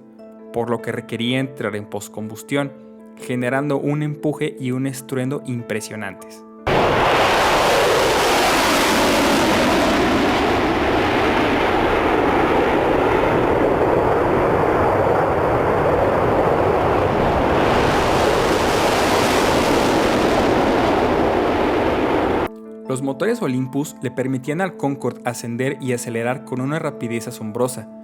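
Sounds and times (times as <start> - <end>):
loud jet roar: 6.7 - 22.5.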